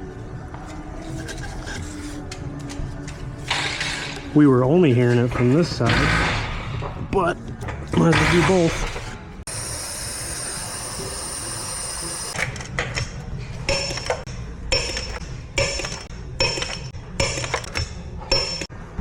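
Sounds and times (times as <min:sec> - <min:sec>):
hammer striking metal: 0:13.7 - 0:18.7.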